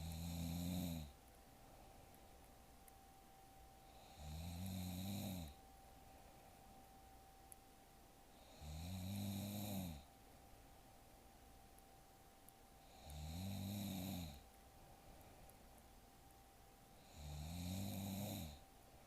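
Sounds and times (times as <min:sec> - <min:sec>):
woman snoring: 0:00.0 - 0:01.2, 0:03.8 - 0:05.6, 0:08.3 - 0:10.1, 0:12.8 - 0:14.4, 0:17.0 - 0:18.6.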